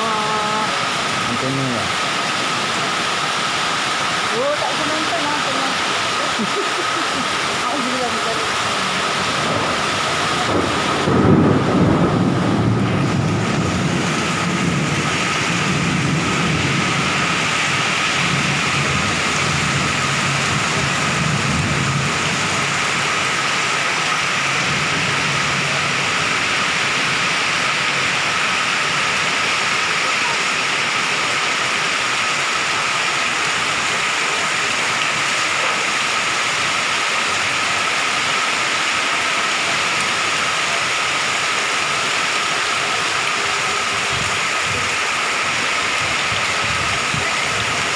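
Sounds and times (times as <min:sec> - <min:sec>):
strong wind rushing: 0:09.2 - 0:22.4.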